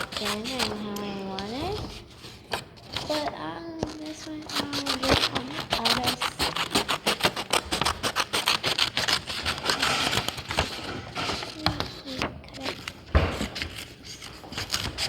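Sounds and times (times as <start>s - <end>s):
murmured words: 0.0s - 1.9s, 3.0s - 7.5s, 11.5s - 12.9s
paper being handled: 0.0s - 15.0s.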